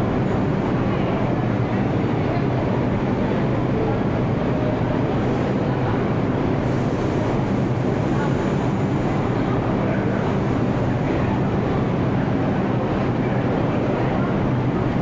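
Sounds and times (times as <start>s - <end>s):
subway station rumble: 0.0s - 15.0s.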